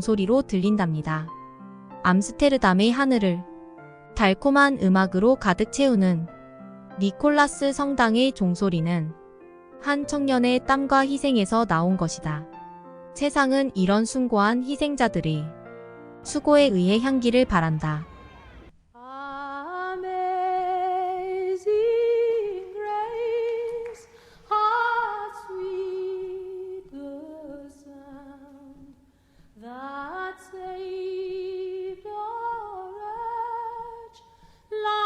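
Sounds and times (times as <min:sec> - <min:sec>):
woman singing with vibrato: 0:19.0 - 0:28.8, 0:29.6 - 0:35.0.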